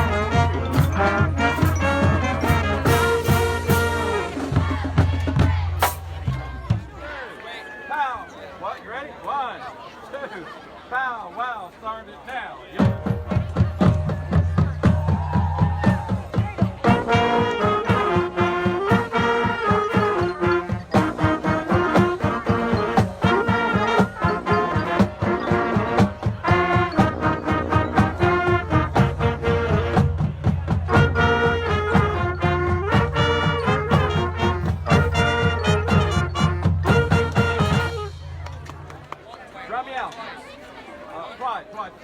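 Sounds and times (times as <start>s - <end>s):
steady drum beat: 0.0s - 7.0s, 12.8s - 39.0s
brass marching band playing: 0.0s - 7.2s, 12.8s - 39.1s.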